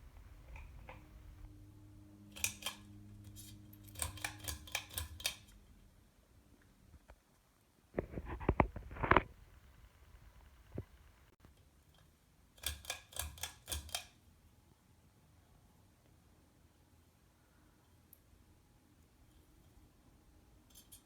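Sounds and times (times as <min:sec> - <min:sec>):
ceiling fan motor humming: 0:00.0 - 0:04.4.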